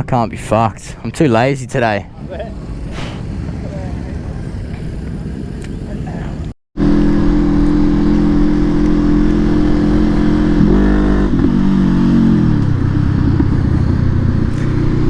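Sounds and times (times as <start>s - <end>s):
motorcycle engine running: 6.8s - 15.0s.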